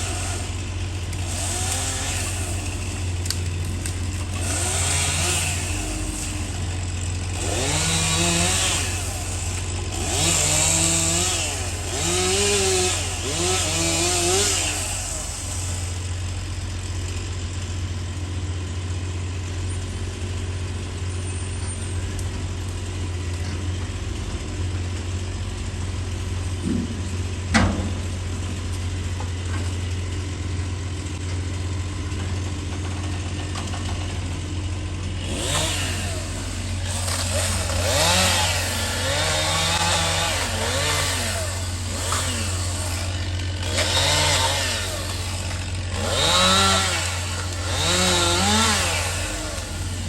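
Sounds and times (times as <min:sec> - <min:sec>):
small engine revving: 0:00.0 - 0:06.7, 0:07.3 - 0:16.0, 0:35.2 - 0:50.0.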